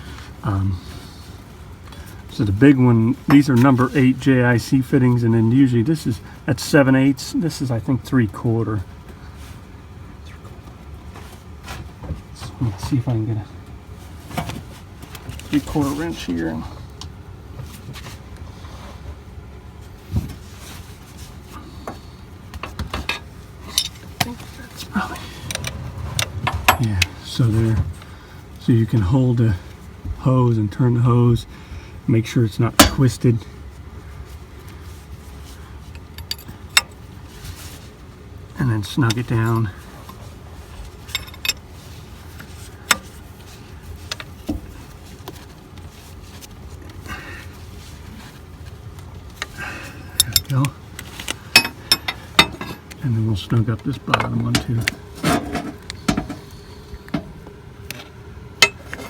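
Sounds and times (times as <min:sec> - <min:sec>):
low steady hum: 0:00.0 - 0:59.0
low steady rumble: 0:00.0 - 0:59.0
hand tools handled: 0:36.0 - 0:37.0, 0:41.0 - 0:41.6, 0:49.4 - 0:53.0.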